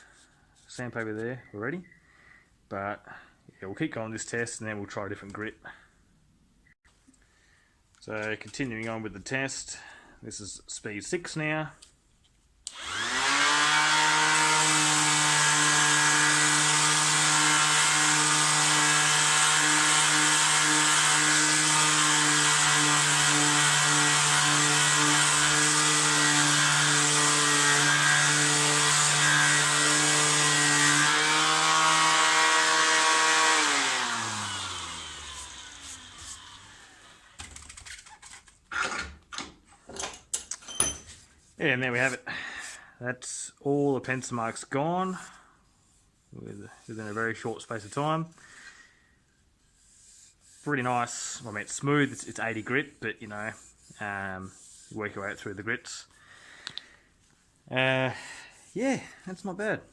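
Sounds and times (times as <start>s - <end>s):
sander motor winding down: 12.7s - 37.3s
orbital sander sanding wood: 12.7s - 37.4s, 49.6s - 56.1s, 57.8s - 59.9s.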